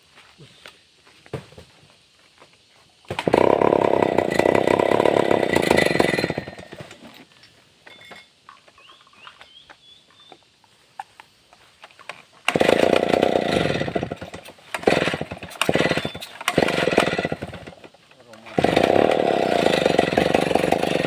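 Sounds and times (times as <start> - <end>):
chainsaw engine revving: 3.1 - 7.0, 12.5 - 21.0.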